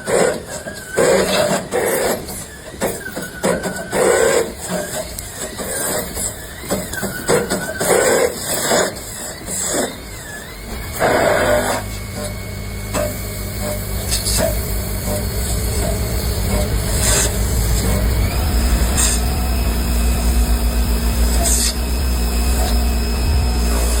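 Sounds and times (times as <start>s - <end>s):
thin high whine: 3.9s - 24.0s
low machine hum: 10.4s - 24.0s.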